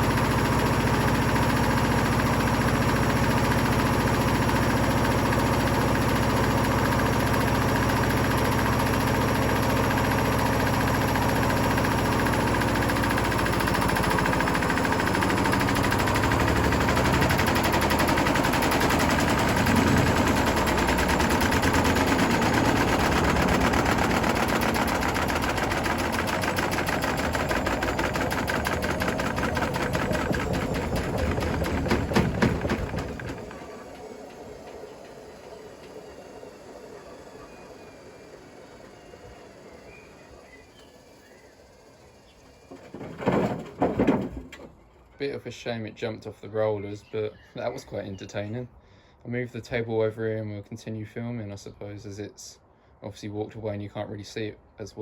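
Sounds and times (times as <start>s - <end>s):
washing machine banging and rattling: 0.0s - 35.2s, 42.7s - 44.8s
washing machine motor whine: 0.0s - 42.9s.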